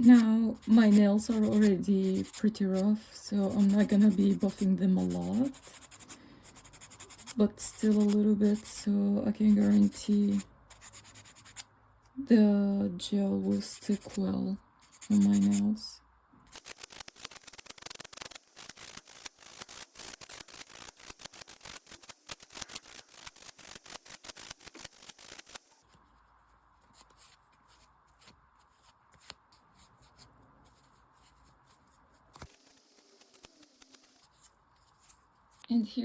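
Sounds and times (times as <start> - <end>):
nail buffer rubbing fingernails: 0.0 - 2.8, 3.4 - 8.8, 9.4 - 11.6, 14.8 - 15.6, 16.5 - 25.9, 26.8 - 35.3.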